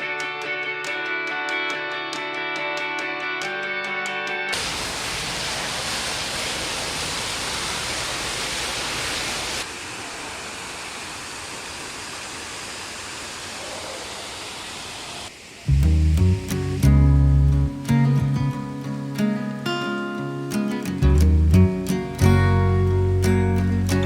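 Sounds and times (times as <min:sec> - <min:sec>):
waterfall rushing: 0:04.6 - 0:20.1.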